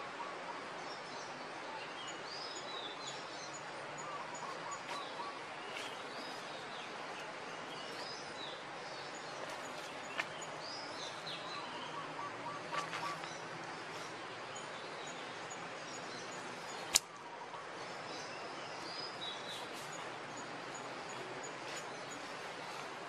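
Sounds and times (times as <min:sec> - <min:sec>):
background hiss: 0:00.0 - 0:23.0
birds chirping: 0:00.9 - 0:23.0
sharp click: 0:16.9 - 0:17.2.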